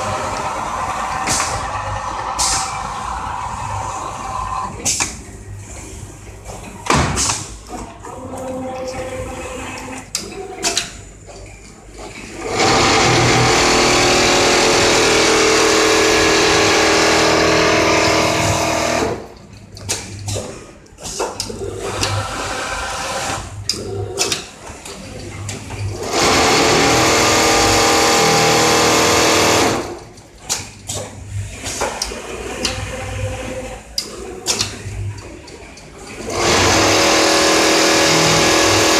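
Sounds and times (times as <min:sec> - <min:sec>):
sewing machine stitching: 0:12.4 - 0:19.3, 0:25.9 - 0:30.0, 0:36.1 - 0:38.9.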